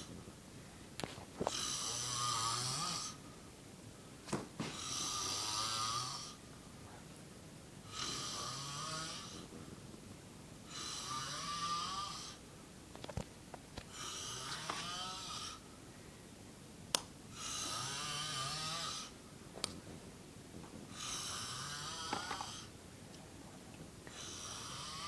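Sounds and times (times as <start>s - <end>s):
man snoring heavily: 1.5s - 3.2s, 4.7s - 6.4s, 7.9s - 9.5s, 10.7s - 12.4s, 13.9s - 15.6s, 17.4s - 19.2s, 20.9s - 22.7s, 24.1s - 25.0s.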